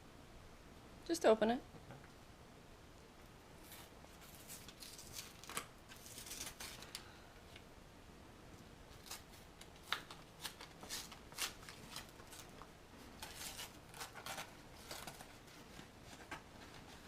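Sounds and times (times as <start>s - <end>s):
package wrapping tearing: 3.6s - 7.0s, 8.9s - 15.5s.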